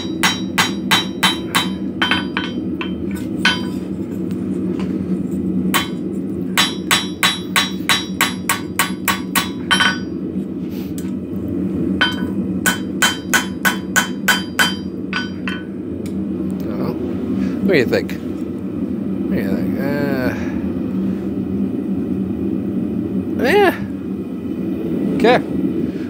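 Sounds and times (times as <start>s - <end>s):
hammer striking metal on anvil: 0.0s - 3.9s, 5.7s - 6.0s, 6.6s - 10.2s, 12.0s - 15.7s
low rumble: 0.0s - 26.0s.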